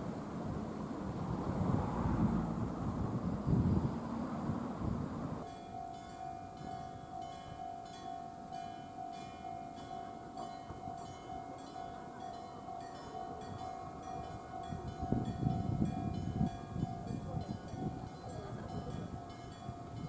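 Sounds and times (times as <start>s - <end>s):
level crossing electric bell: 5.4s - 20.0s.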